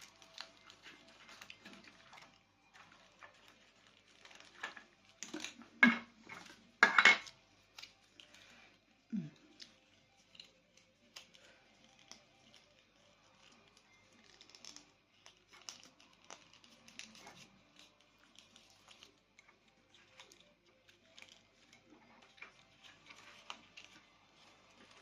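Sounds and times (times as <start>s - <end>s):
plastic toys clattering: 0.0s - 8.3s.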